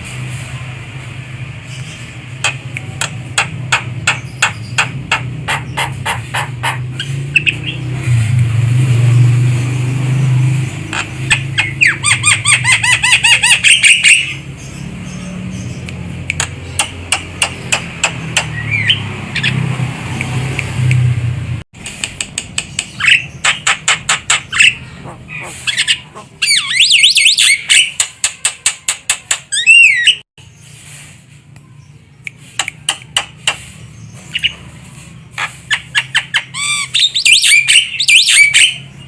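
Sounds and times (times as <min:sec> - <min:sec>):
bird clicking and whistling: 0:02.4 - 0:07.8, 0:15.8 - 0:21.1, 0:21.8 - 0:24.8, 0:25.4 - 0:30.2, 0:32.2 - 0:34.6.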